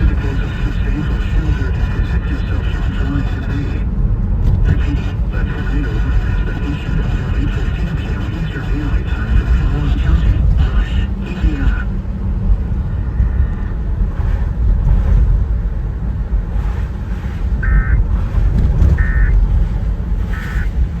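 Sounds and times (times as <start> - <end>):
low rumble: 0.0 - 21.0
two-tone electronic data bursts: 17.6 - 18.0, 19.0 - 19.4, 20.3 - 20.8.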